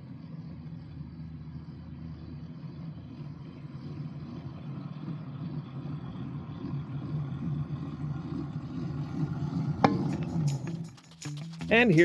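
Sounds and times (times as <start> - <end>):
locomotive engine running: 0.0 - 12.0.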